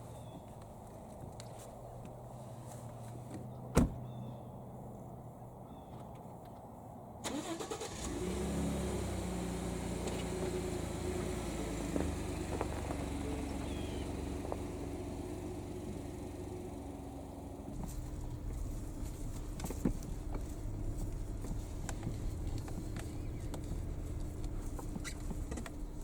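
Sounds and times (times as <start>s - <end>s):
truck engine starting and idling: 7.2s - 26.0s.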